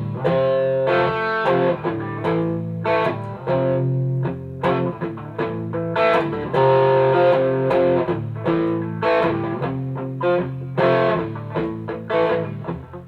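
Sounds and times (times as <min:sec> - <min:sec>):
overdriven electric guitar chords: 0:00.0 - 0:13.0.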